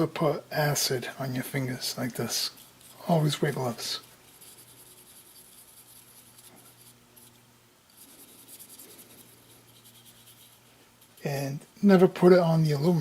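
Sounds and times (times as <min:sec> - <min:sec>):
low steady hum: 0:00.0 - 0:13.0
fingertip rubbing on knife blade: 0:01.9 - 0:11.3.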